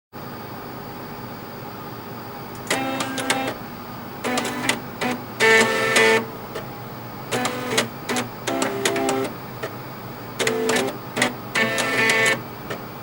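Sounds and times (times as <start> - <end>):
floppy drive motors buzzing a tune: 2.6 - 3.6, 4.2 - 9.8, 10.4 - 13.0.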